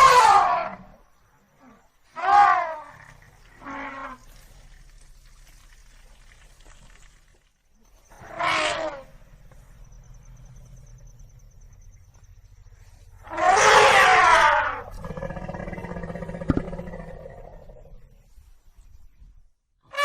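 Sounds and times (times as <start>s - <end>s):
elephant calling: 1.6s - 4.3s, 8.0s - 9.4s, 12.9s - 18.1s.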